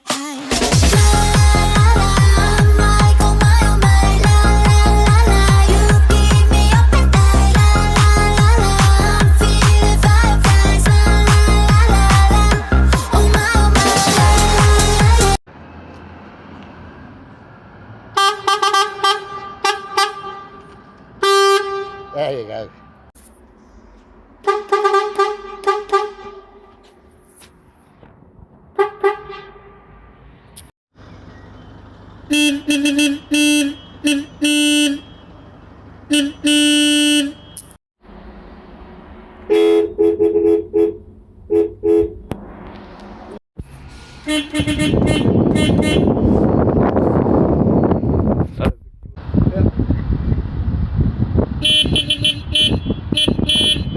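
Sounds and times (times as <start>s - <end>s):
street traffic noise: 0.0s - 53.9s
bus horn toots: 18.1s - 23.1s, 24.4s - 26.9s, 28.7s - 29.9s, 32.3s - 35.4s, 36.1s - 37.8s, 39.4s - 42.3s, 44.2s - 46.6s, 51.6s - 53.9s
higher-pitched horn toots: 24.4s - 26.9s, 32.3s - 35.3s, 36.1s - 37.8s, 44.2s - 46.5s.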